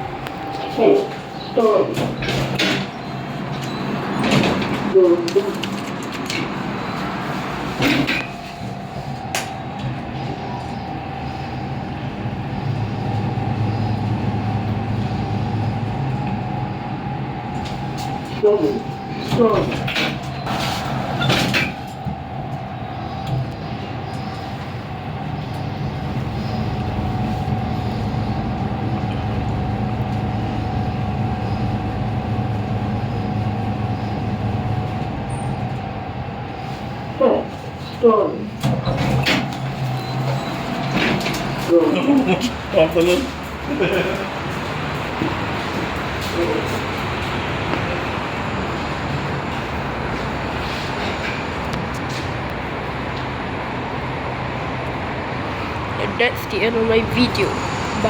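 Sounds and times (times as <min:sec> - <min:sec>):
lift drive whine: 0:00.0 - 0:04.9, 0:06.0 - 0:41.8
low rumble: 0:08.3 - 0:36.9.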